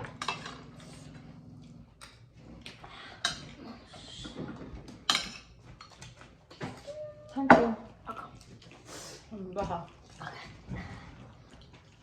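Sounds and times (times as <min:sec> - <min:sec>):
cutlery clicking on dishes: 0:04.9 - 0:06.7
chewing and mouth sounds: 0:07.9 - 0:12.0.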